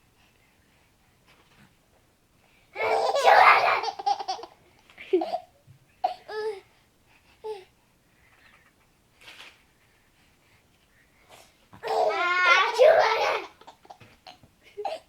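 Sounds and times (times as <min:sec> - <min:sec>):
baby laughing: 0:02.8 - 0:04.6, 0:11.8 - 0:15.0.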